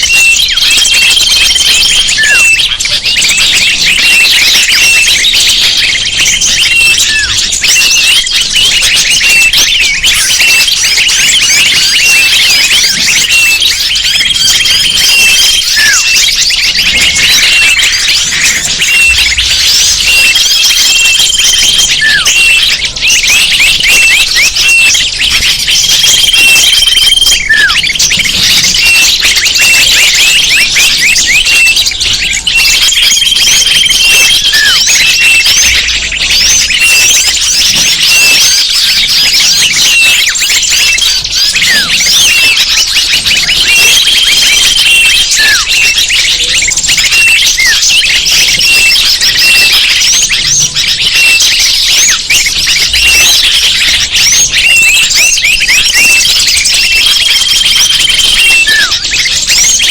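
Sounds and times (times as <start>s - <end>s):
small birds chirping and twittering: 0.0s - 59.9s
bird whistles and falling swoops: 6.3s - 31.9s, 32.6s - 53.4s.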